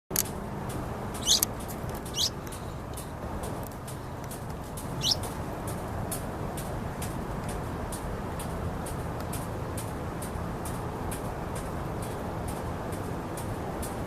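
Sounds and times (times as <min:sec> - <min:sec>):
nestlings calling: 0:01.1 - 0:02.8, 0:04.8 - 0:05.4.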